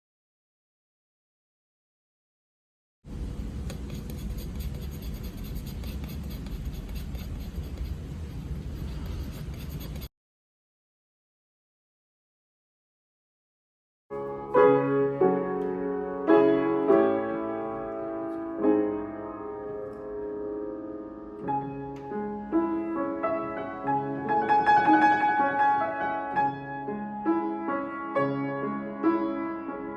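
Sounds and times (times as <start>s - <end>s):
slow piano chords: 14.1s - 29.9s.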